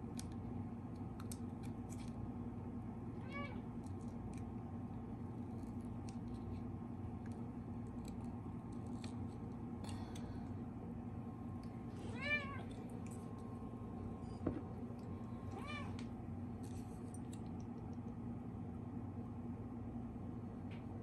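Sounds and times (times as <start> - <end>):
steady low hum: 0.0 - 21.0
cat meowing: 3.2 - 3.6, 12.0 - 12.7, 15.5 - 16.0.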